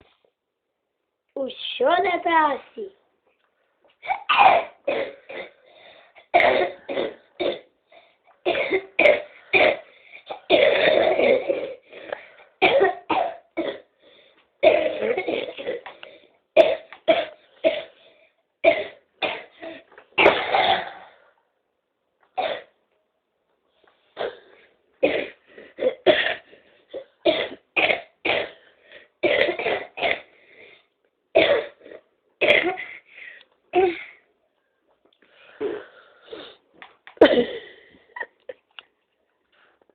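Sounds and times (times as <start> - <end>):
boy coughing: 4.0 - 5.6, 6.2 - 7.7, 8.4 - 11.9, 12.6 - 13.9, 14.6 - 15.9, 18.6 - 21.2, 24.2 - 28.6, 29.2 - 30.3, 31.4 - 33.1, 33.8 - 34.2, 37.2 - 38.4.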